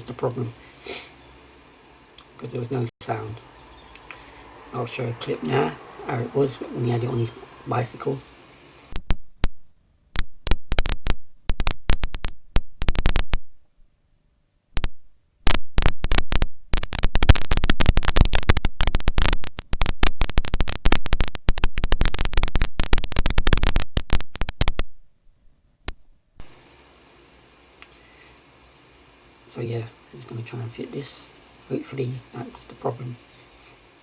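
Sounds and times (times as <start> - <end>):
loud microphone crackling: 2.0 - 13.7, 14.7 - 25.1, 25.8 - 27.0.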